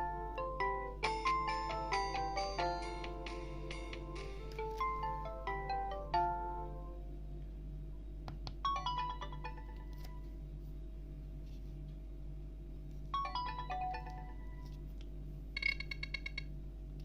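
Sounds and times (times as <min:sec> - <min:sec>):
steady low hum: 0:00.0 - 0:17.0
phone tone falling notes: 0:13.2 - 0:14.8.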